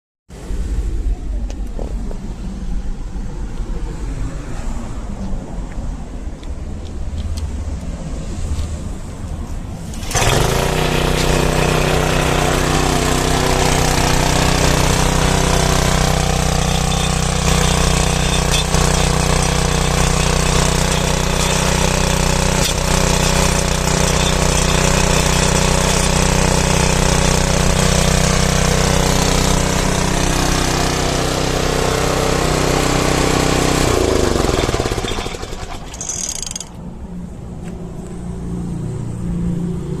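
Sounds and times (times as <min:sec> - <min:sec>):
cultivator engine running: 0:09.9 - 0:36.8.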